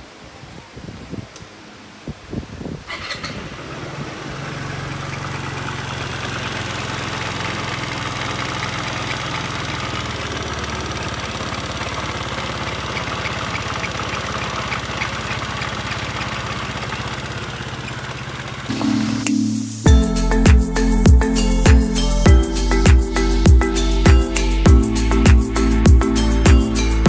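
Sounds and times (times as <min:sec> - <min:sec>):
scooter engine idling: 0:02.9 - 0:19.2.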